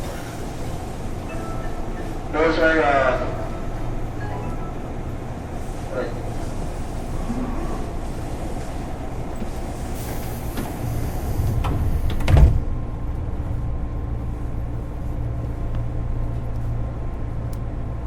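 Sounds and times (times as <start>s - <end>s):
train car hum: 0.0s - 18.0s
air hiss of doors closing: 9.4s - 12.6s.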